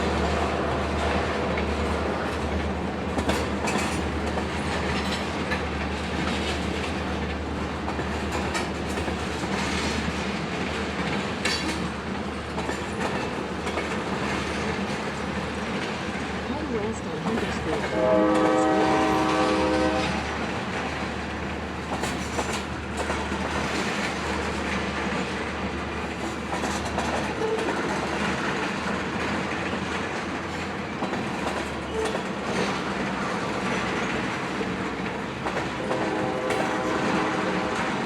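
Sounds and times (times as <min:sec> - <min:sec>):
train rumble and rail clatter: 0:00.0 - 0:38.0
locomotive horn chord: 0:17.8 - 0:20.4, 0:35.8 - 0:38.0.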